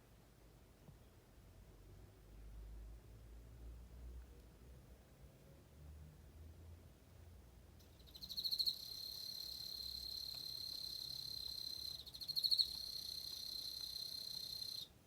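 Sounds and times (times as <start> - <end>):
cricket trilling: 7.9 - 14.9.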